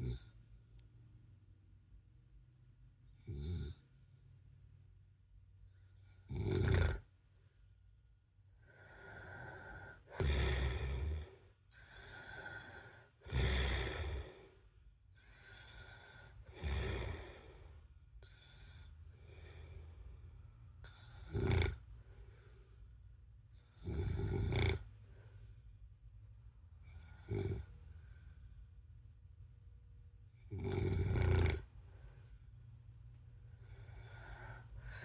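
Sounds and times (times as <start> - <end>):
man snoring: 0.0 - 0.3, 3.3 - 3.8, 6.3 - 7.0, 9.1 - 11.4, 12.1 - 14.5, 15.6 - 17.5, 20.9 - 21.8, 23.7 - 24.8, 27.0 - 27.7, 30.5 - 31.7
quiet breaths: 0.0 - 35.0.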